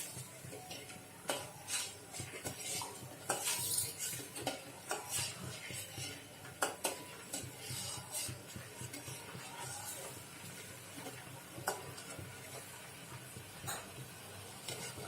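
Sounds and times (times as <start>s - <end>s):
spoon scraping and clinking pot: 0.7s - 10.2s, 14.6s - 15.0s.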